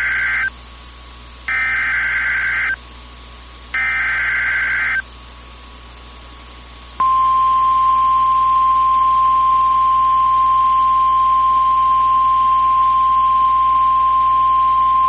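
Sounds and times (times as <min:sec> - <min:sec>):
steady alarm tone through radio: 0:00.0 - 0:00.5, 0:01.5 - 0:02.8, 0:03.8 - 0:05.0, 0:07.0 - 0:15.0.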